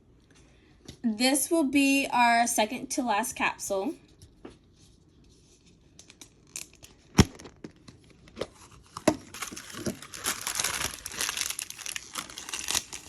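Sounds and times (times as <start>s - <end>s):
plastic bags crinkling: 6.4s - 13.0s.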